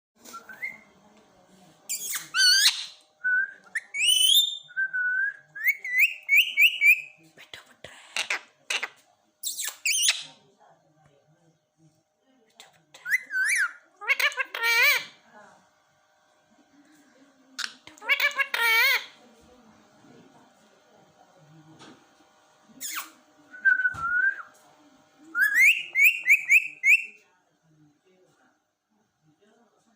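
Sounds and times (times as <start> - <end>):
parrot whistling: 25.4 - 27.2.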